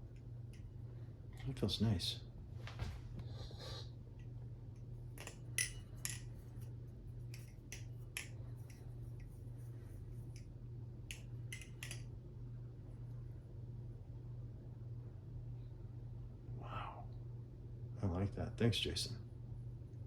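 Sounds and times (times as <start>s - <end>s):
steady low hum: 0.0s - 20.0s
butterfly knife clicking: 11.1s - 12.0s.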